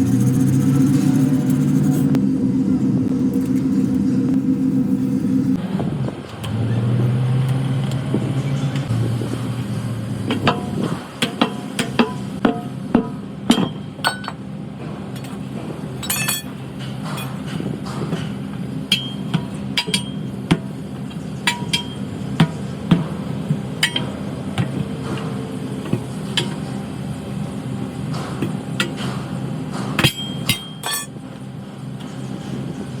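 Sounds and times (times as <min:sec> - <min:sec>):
steady low hum: 0:00.0 - 0:06.2
metal tools clinking: 0:13.6 - 0:14.4, 0:16.0 - 0:16.5, 0:30.0 - 0:31.2.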